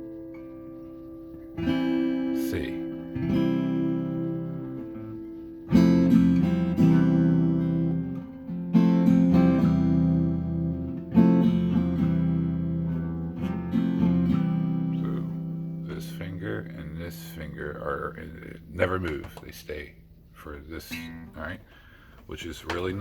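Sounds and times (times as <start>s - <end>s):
acoustic guitar strumming chords: 0.0s - 23.0s.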